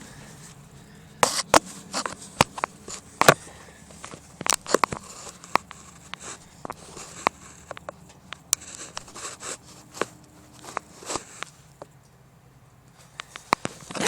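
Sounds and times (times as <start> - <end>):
phone being handled: 1.2 - 11.9, 13.0 - 14.0.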